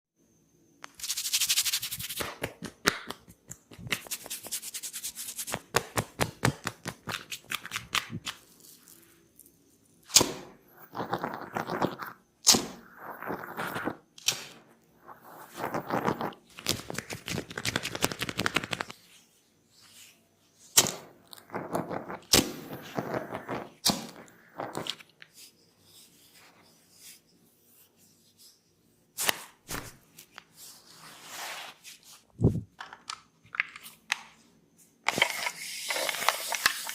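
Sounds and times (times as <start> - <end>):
hands rubbing and patting head: 0.9 - 8.5, 15.6 - 19.0.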